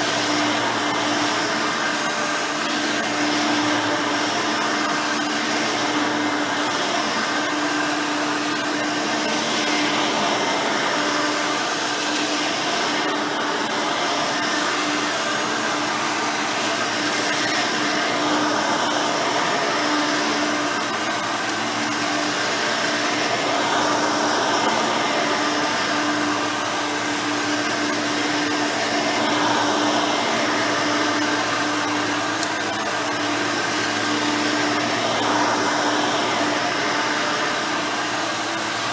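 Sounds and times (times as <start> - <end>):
vacuum cleaner running on carpet: 0.0 - 38.9.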